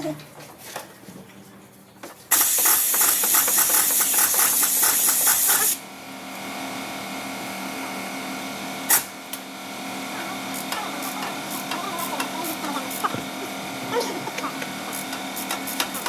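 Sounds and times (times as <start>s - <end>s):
air tool hissing and clattering: 2.3s - 5.8s, 10.8s - 16.0s.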